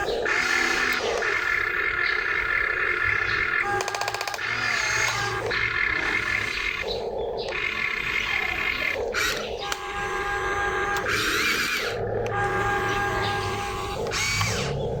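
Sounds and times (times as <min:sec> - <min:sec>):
small electric motors whirring: 0:00.0 - 0:15.0.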